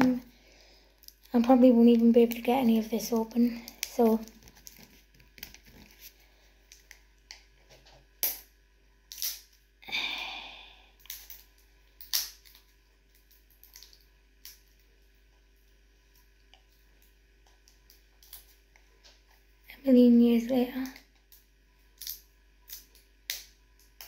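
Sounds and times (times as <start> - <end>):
packaging rustling: 3.1 - 6.2.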